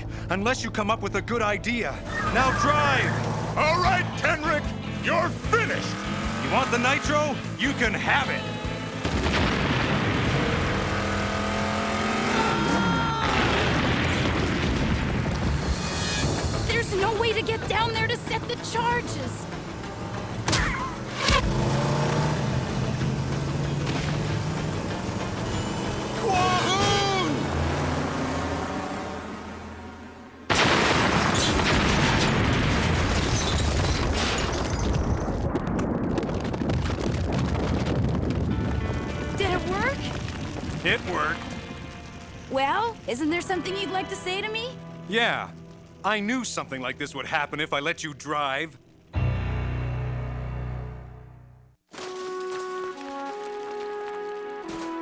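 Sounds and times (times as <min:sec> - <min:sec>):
cartoon explosion blast: 0:09.0 - 0:10.6, 0:12.6 - 0:16.4, 0:30.5 - 0:38.8
car engine passing by: 0:19.8 - 0:30.5
heavy rumble: 0:34.8 - 0:43.5.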